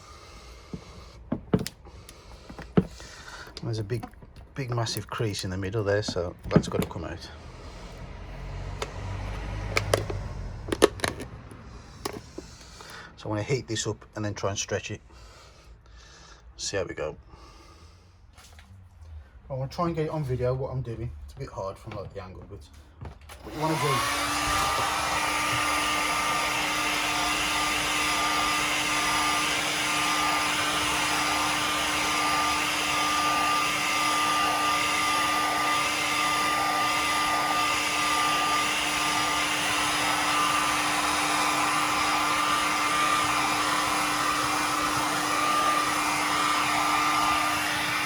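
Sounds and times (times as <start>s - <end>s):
hot-air blower running: 0.0s - 5.0s, 6.0s - 13.1s, 23.3s - 48.0s.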